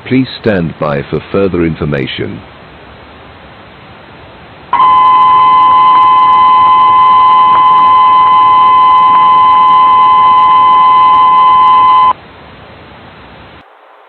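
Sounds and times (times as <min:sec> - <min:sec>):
faint hiss: 0:00.0 - 0:08.4, 0:12.1 - 0:14.0
two-tone alarm: 0:04.8 - 0:12.2.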